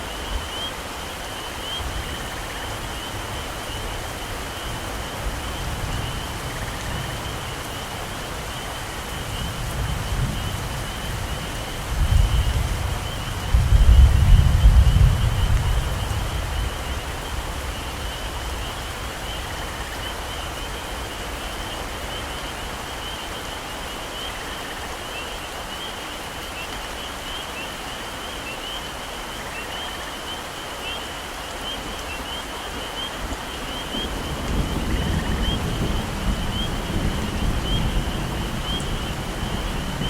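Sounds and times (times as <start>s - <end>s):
heavy rain: 0.0s - 40.0s
thunder rumble: 9.5s - 18.7s, 33.9s - 40.0s.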